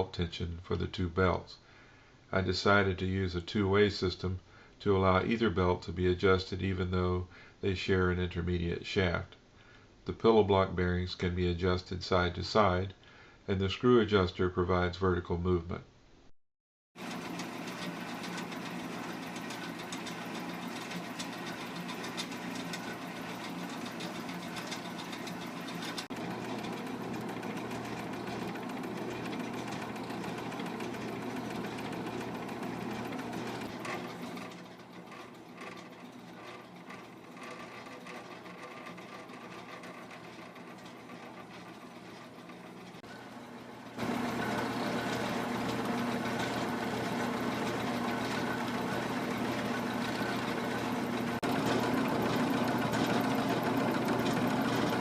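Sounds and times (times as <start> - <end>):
band saw motor hum: 17.0 - 55.0.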